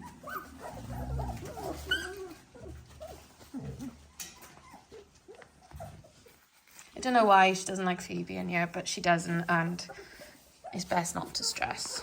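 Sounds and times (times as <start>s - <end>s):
puppies whimpering and squeaking: 0.0s - 6.7s, 9.5s - 12.0s.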